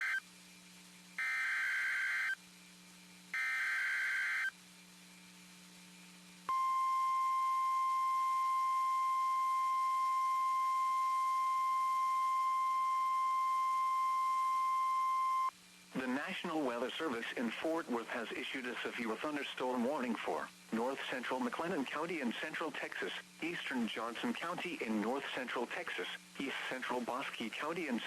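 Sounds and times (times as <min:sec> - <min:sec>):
steady warning alarm tone: 0:01.2 - 0:02.4, 0:03.4 - 0:04.5, 0:06.5 - 0:15.5.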